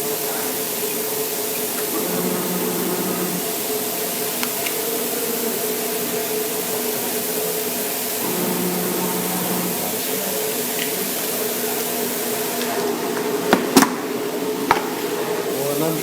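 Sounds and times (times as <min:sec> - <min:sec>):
cutter rushing hiss: 0:00.0 - 0:16.0
motor hum: 0:01.9 - 0:03.6, 0:08.2 - 0:09.9.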